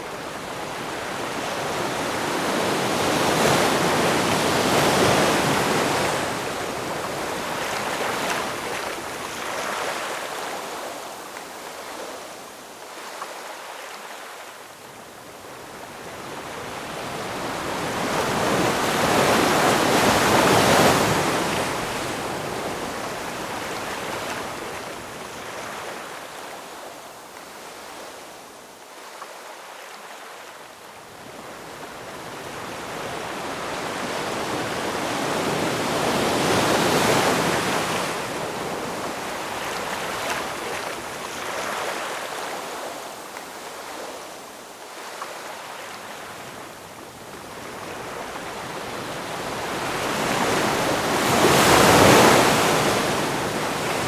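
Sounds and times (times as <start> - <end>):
ocean waves breaking: 47.5 - 54.0.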